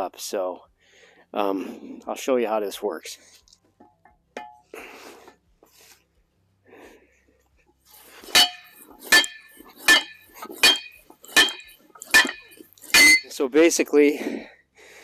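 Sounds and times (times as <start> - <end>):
metal-on-metal hammer strikes: 8.3 - 13.4.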